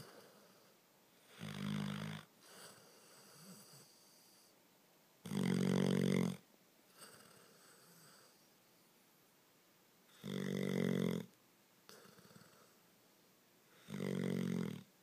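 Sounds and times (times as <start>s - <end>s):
soft breathing: 0.0s - 1.4s, 2.4s - 4.6s
loud rattling snores: 1.3s - 3.9s, 5.3s - 6.4s, 10.2s - 11.3s, 13.8s - 14.9s.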